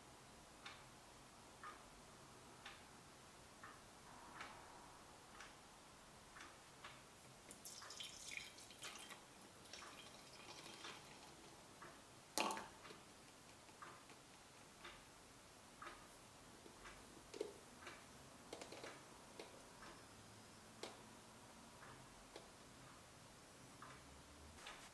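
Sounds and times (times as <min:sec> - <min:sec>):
small water drips: 0:07.4 - 0:13.0
watery clinking: 0:07.6 - 0:11.5.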